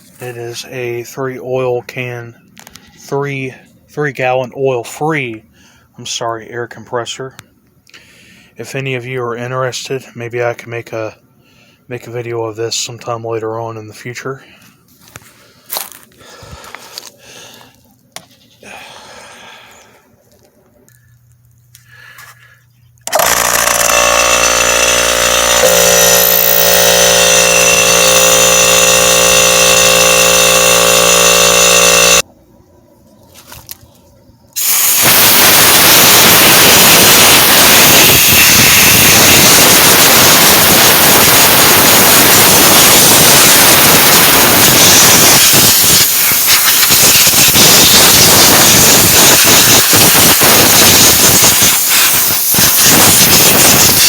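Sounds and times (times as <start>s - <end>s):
air compressor motor droning: 23.0s - 32.3s, 34.6s - 54.0s
compressed air hissing: 34.6s - 54.0s.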